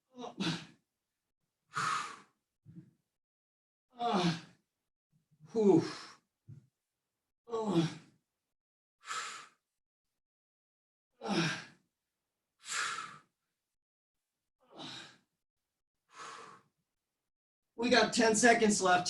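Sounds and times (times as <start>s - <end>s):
person breathing hard: 1.7s - 2.4s, 9.0s - 9.6s, 12.6s - 13.3s, 14.7s - 15.3s, 16.1s - 16.7s.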